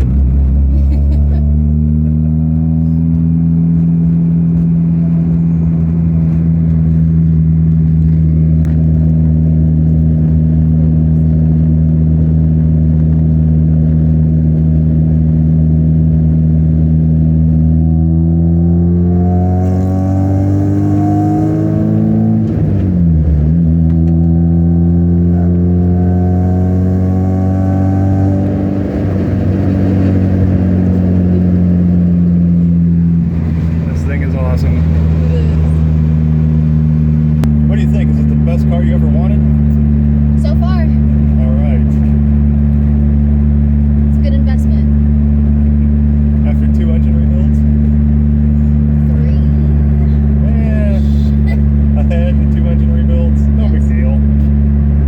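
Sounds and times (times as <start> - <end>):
car engine revving: 0.0 - 55.0.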